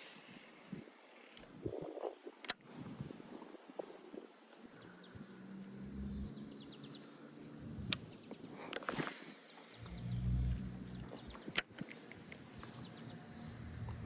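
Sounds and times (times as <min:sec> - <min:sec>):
sharp clicks: 0:02.4 - 0:02.6, 0:07.6 - 0:09.0, 0:09.8 - 0:14.0
low hum: 0:04.8 - 0:08.6, 0:09.6 - 0:14.0.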